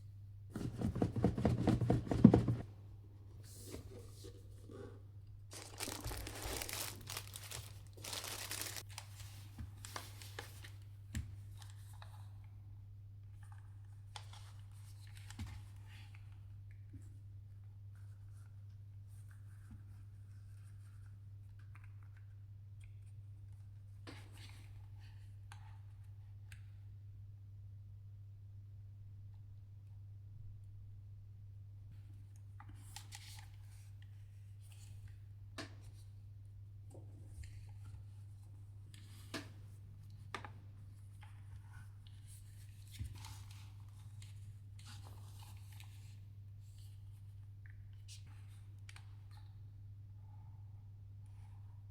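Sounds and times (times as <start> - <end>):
headphones handled clicks and rustling: 5.5 - 10.8.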